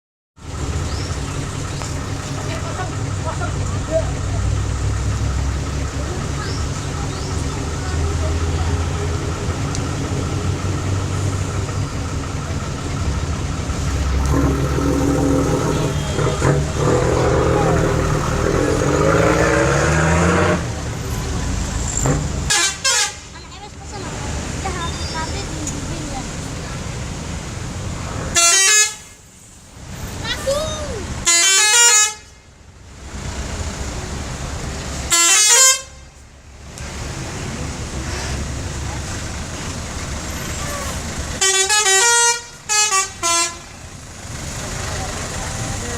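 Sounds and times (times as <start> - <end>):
bus engine idling: 0.4 - 19.3, 20.6 - 45.9
musical bus horn: 14.2 - 17.8, 22.5 - 23.3, 28.3 - 29.2, 31.2 - 32.4, 35.0 - 36.2, 40.6 - 43.8.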